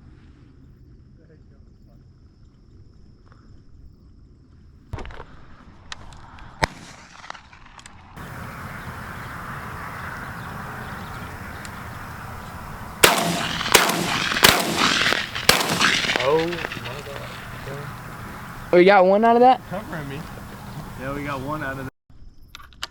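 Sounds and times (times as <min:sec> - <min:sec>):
faint clicks: 0:08.2 - 0:21.7
shotgun shots: 0:08.2 - 0:21.8
steady rushing noise: 0:08.2 - 0:21.9.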